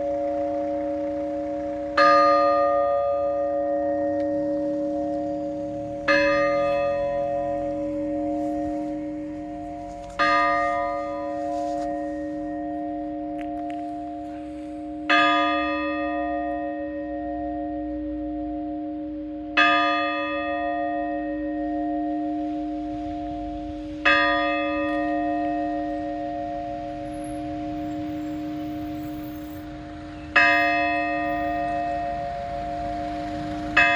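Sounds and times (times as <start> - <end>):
church bell tolling: 0.0 - 33.9.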